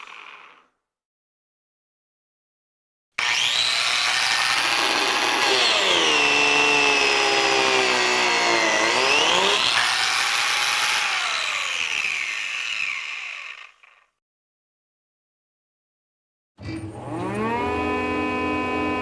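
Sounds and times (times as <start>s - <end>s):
jointer motor whine: 3.2s - 13.9s, 16.6s - 19.0s.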